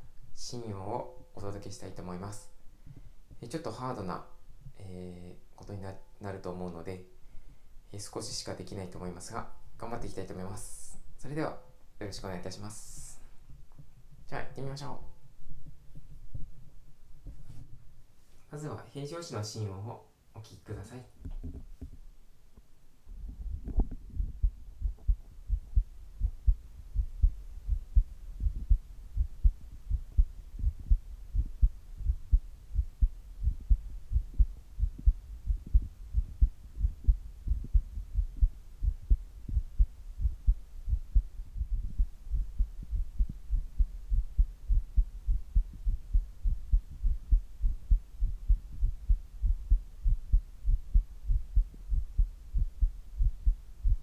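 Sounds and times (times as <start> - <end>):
heartbeat thumps: 15.4 - 17.8, 23.1 - 54.0.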